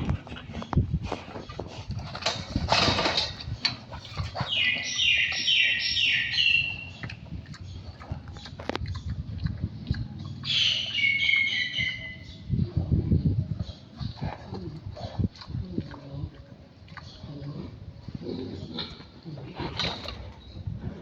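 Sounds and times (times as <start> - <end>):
high falling animal calls: 10.4 - 12.2.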